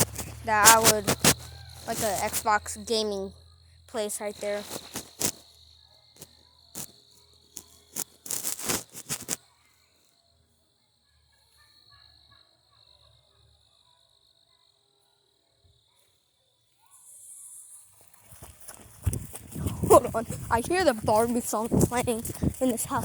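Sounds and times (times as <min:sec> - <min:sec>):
rustling: 0:00.0 - 0:02.6, 0:04.3 - 0:05.5, 0:07.5 - 0:09.4, 0:18.1 - 0:23.0
insects chirping: 0:00.0 - 0:23.0.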